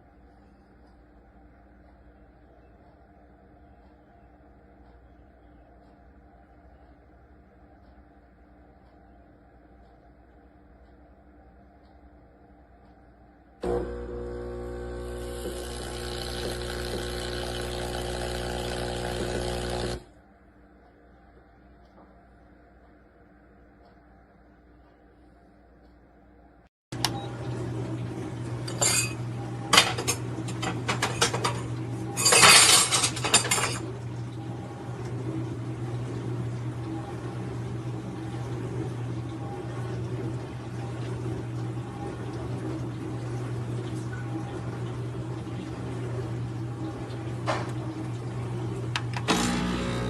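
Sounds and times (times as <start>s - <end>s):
espresso machine pump humming: 13.6s - 20.1s, 26.9s - 50.0s
cup and metal parts clinking: 28.6s - 33.9s.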